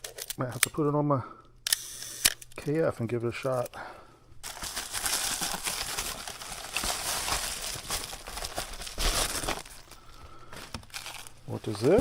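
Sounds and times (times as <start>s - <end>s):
packing material crinkling: 4.4s - 12.0s.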